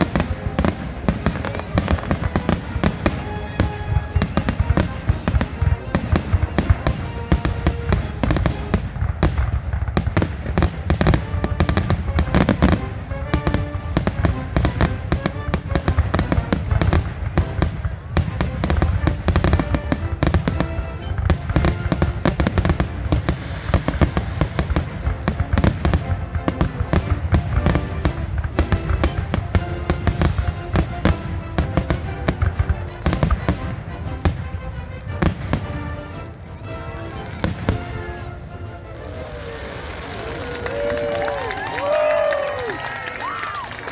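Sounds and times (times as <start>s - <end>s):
background music: 0.0s - 43.9s
fireworks crackling and banging: 0.0s - 43.9s.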